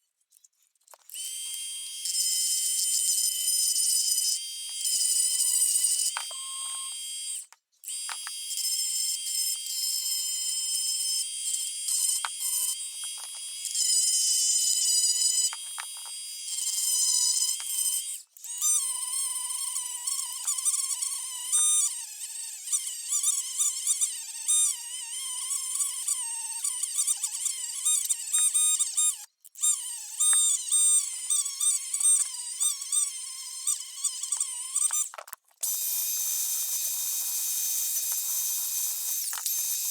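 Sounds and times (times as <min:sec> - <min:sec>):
high-speed power tool whine: 0:35.6 - 0:39.9.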